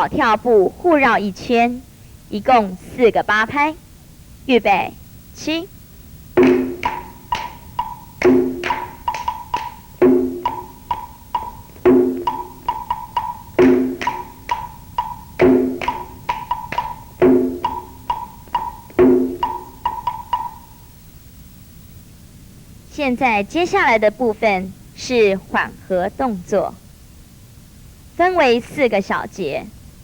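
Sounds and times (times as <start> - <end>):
low drum strokes: 6.4 - 20.1
wood-block ticks: 6.4 - 20.8.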